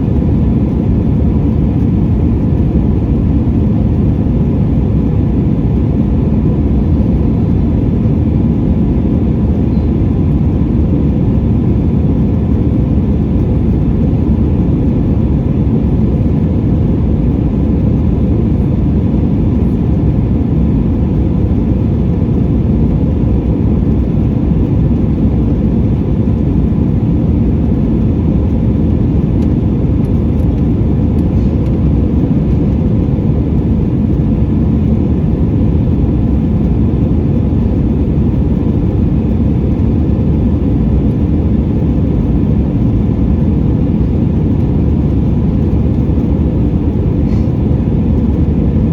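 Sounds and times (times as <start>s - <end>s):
faint steady whine: 0.0s - 48.9s
jet engine roar in cabin: 0.0s - 48.9s
rushing air: 43.3s - 48.9s.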